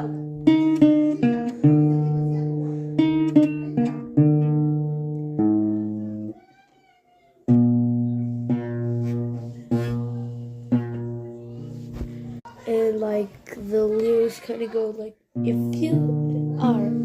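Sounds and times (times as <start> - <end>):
guitar plucked notes and chords: 0.0 - 6.3, 7.5 - 12.4, 15.4 - 17.0.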